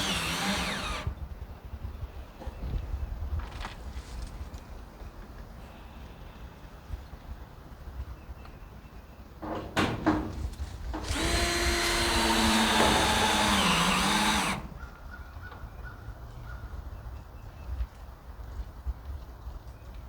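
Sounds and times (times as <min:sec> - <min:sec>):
power saw cutting gutter: 0:00.0 - 0:01.1, 0:11.0 - 0:14.8.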